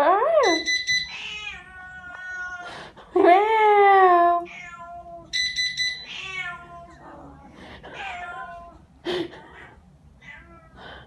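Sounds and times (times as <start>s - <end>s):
high electronic alarm beeps: 0.4s - 1.2s, 5.4s - 6.1s
cats meowing: 1.1s - 2.7s, 4.4s - 5.4s, 6.0s - 8.9s, 9.6s - 10.8s.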